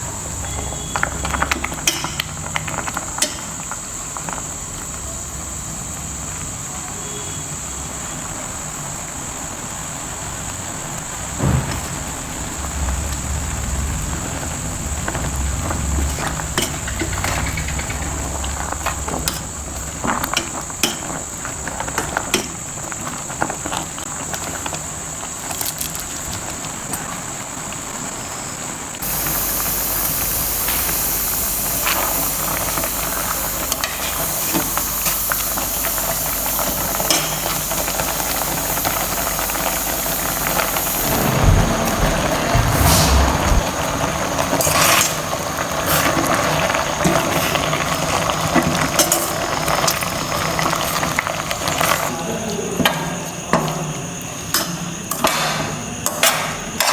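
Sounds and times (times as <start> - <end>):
food sizzling in a hot pan: 29.0 - 41.4.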